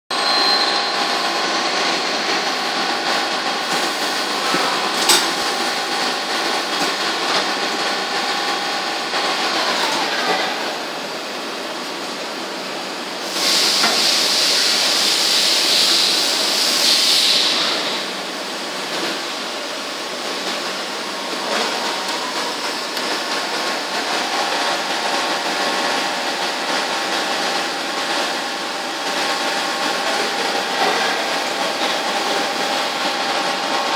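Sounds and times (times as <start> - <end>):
lathe machine whine: 0.1 - 33.9
loud hiss: 13.2 - 18.0.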